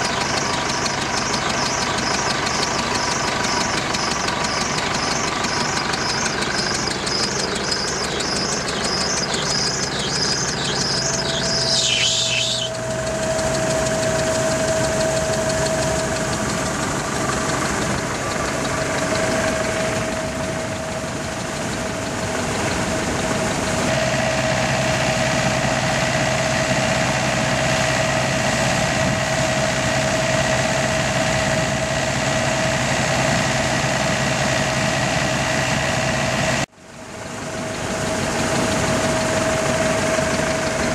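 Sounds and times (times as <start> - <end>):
rapid high squeak: 0.0 - 23.8
combine harvester running: 0.0 - 40.9.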